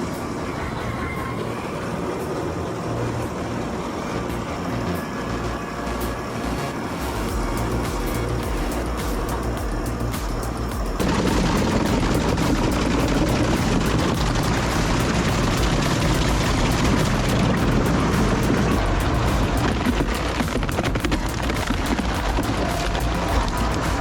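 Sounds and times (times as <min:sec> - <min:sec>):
heavy machinery running: 0:00.0 - 0:24.0
music: 0:00.0 - 0:24.0
wood shredder crackling: 0:07.3 - 0:24.0.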